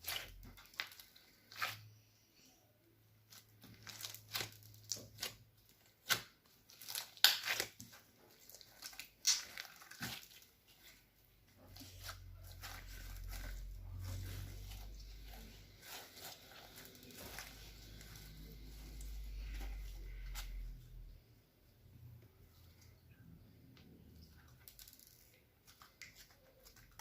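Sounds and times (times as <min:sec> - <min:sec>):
slime crackling and popping: 0:03.6 - 0:11.0
low steady hum: 0:10.7 - 0:25.4.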